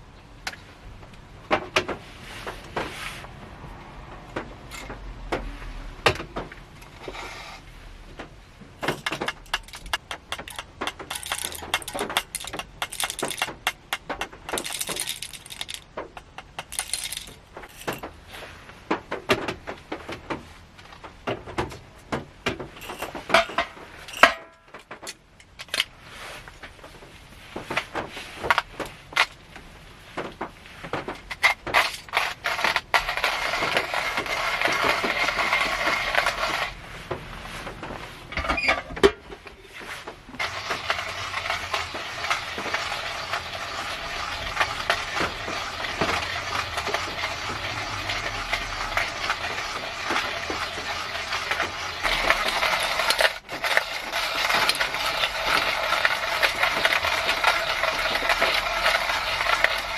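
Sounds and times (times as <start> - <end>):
rain pattering on car roof: 40.0 - 59.9.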